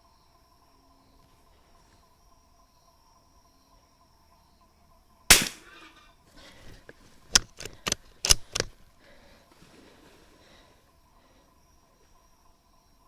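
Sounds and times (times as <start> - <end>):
insects chirping: 0.0 - 13.0
rifle shot: 5.3 - 6.0, 7.3 - 8.7
sharp clicks and knocks: 6.6 - 8.8.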